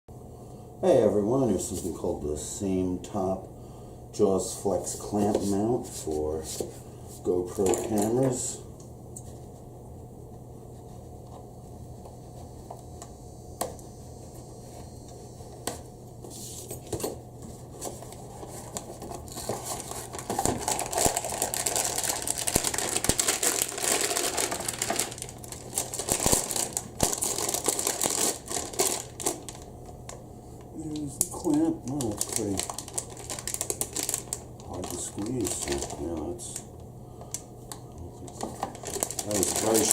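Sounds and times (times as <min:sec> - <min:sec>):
plastic packaging crinkling: 0:17.6 - 0:30.2, 0:30.8 - 0:39.9.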